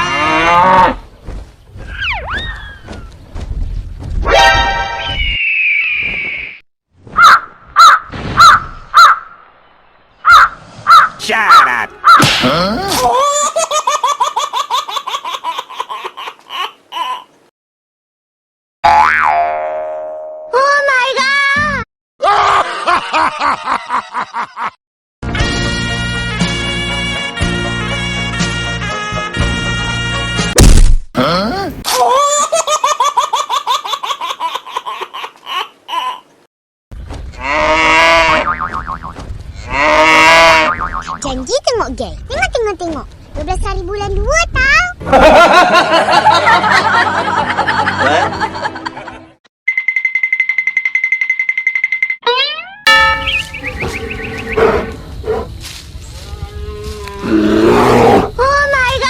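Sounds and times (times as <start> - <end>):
high-pitched laughing: 12.4 - 17.3
sustained wavering pitched sound: 52.9 - 54.5.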